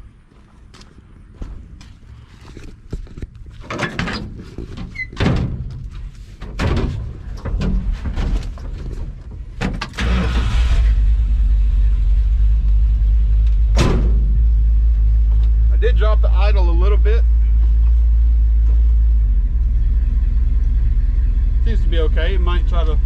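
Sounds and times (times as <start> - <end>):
truck engine rumbling: 0.0 - 23.0
knocks and clunks: 2.7 - 10.5, 13.4 - 15.6.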